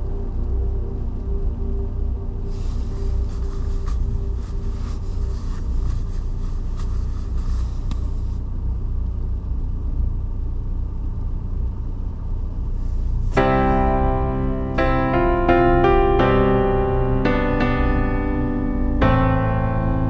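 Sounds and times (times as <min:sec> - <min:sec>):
piano music: 0:13.4 - 0:20.0.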